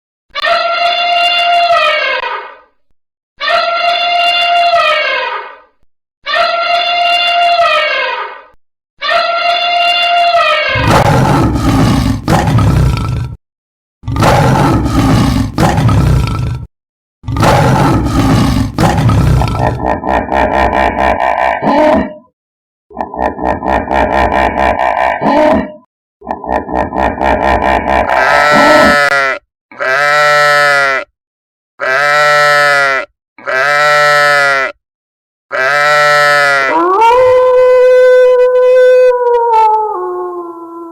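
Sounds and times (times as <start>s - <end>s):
trumpet-like animal call: 0.3s - 2.6s, 3.4s - 11.2s, 28.1s - 31.1s
long rough animal roars: 10.8s - 13.4s, 14.0s - 22.3s, 22.9s - 29.1s
farm animal bleating: 28.1s - 31.2s, 31.8s - 34.8s, 35.5s - 36.9s.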